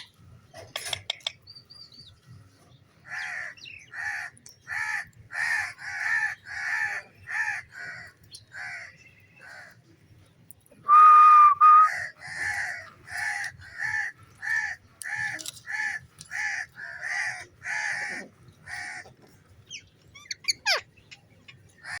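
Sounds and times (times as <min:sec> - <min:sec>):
loud steady whistle: 0:10.9 - 0:11.9
parrot squawking: 0:20.2 - 0:21.1.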